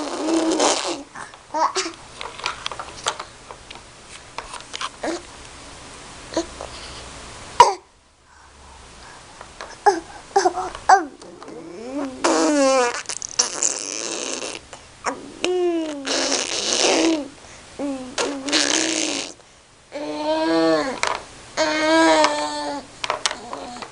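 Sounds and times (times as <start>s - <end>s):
baby squealing and cooing: 0.0s - 1.9s, 9.8s - 21.0s, 21.6s - 23.9s.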